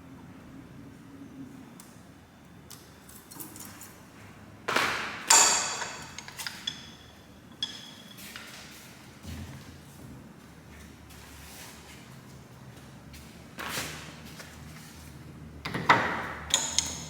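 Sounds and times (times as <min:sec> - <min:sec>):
metal parts clinking together: 0:05.3 - 0:07.0, 0:16.5 - 0:17.0.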